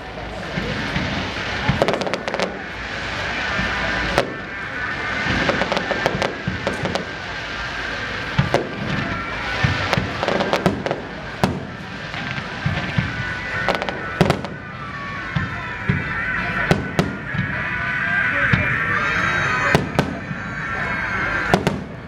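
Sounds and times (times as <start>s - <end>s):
fireworks bangs: 0.0s - 22.0s
fireworks rumble and crackle: 0.0s - 22.0s.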